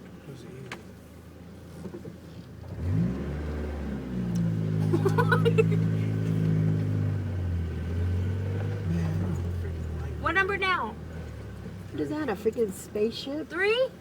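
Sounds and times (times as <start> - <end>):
truck engine revving: 2.7 - 12.2.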